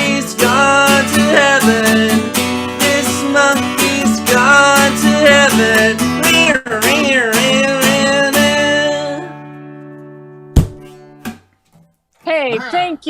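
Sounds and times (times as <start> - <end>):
acoustic guitar strumming: 0.0 - 12.0
sharp thump: 10.6 - 11.4.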